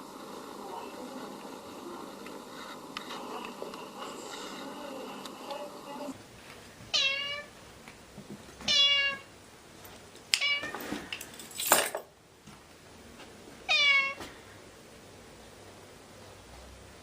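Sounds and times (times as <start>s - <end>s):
cat meowing: 6.9s - 7.5s, 8.7s - 9.3s, 13.7s - 14.2s.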